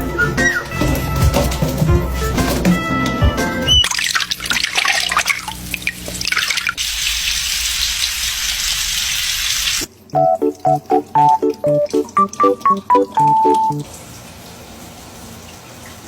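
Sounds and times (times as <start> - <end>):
light music with short notes: 0.0 - 3.8, 10.2 - 13.9
tap water splashing and running: 0.6 - 16.0.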